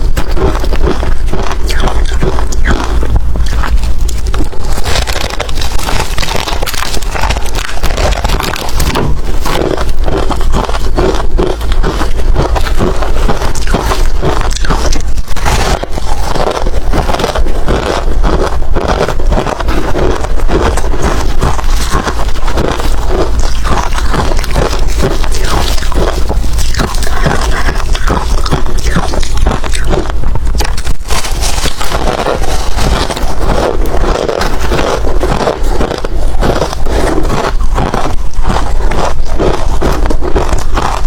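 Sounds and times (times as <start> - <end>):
ice crunching being chewed: 0.0 - 41.0.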